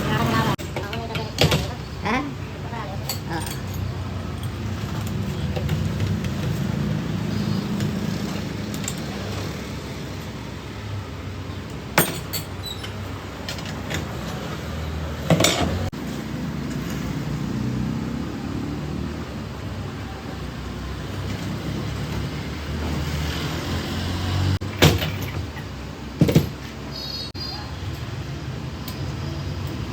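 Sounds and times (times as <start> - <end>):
low rumble of traffic: 0.0 - 29.9
metal tools clinking: 3.0 - 5.8, 12.0 - 13.0.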